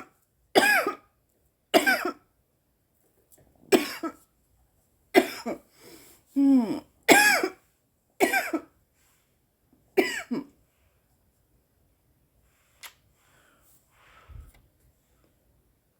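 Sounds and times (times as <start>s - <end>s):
woman coughing: 0.0s - 1.0s, 1.8s - 2.2s, 3.7s - 4.2s, 5.2s - 5.6s, 6.5s - 7.6s, 8.2s - 8.7s, 10.0s - 10.5s.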